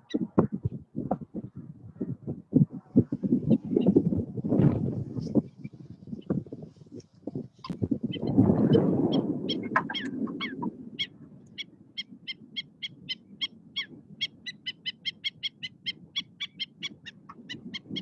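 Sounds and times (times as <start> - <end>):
birds yapping alarm calls: 7.6 - 18.0.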